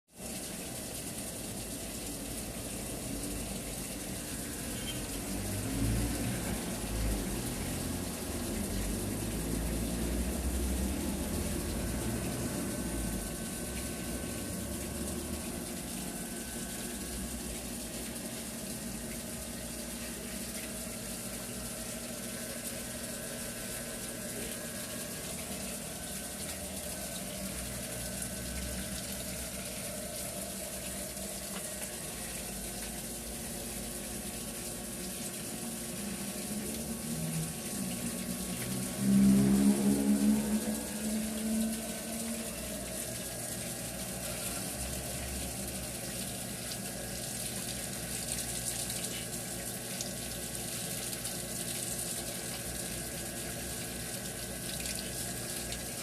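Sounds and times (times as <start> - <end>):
water gushing from well: 0.1 - 56.0.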